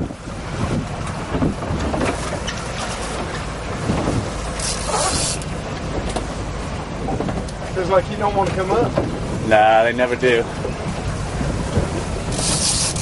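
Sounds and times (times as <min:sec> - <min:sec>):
boat engine rumbling: 0:00.0 - 0:13.0
wind buffeting microphone: 0:00.0 - 0:13.0.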